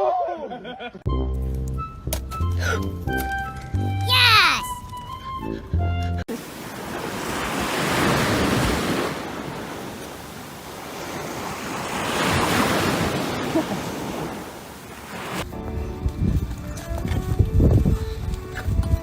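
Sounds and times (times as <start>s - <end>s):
waves washing in: 6.3s - 15.5s.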